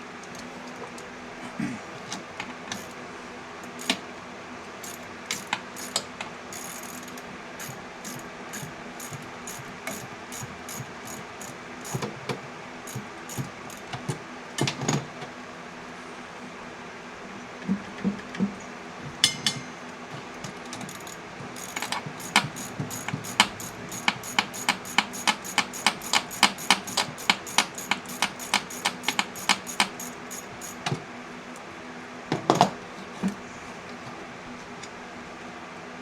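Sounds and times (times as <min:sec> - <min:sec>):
hand ratchet clicking: 0:02.7 - 0:03.0, 0:03.7 - 0:04.0, 0:04.8 - 0:12.1, 0:12.9 - 0:14.0, 0:20.8 - 0:31.0
steady low hum: 0:19.2 - 0:31.4.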